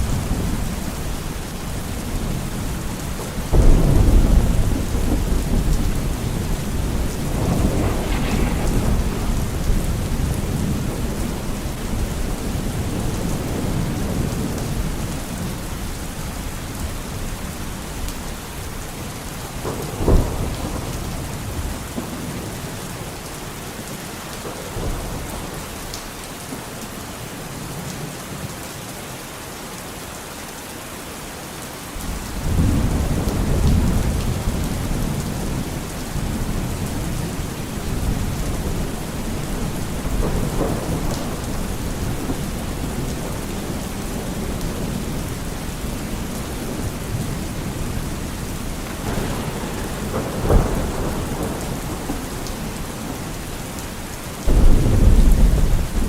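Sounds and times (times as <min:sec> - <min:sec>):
rolling thunder rumble: 0:00.0 - 0:23.6, 0:32.0 - 0:56.0
steady rain falling: 0:00.0 - 0:56.0
thunder crack: 0:03.4 - 0:15.0, 0:36.1 - 0:43.8, 0:46.7 - 0:56.0.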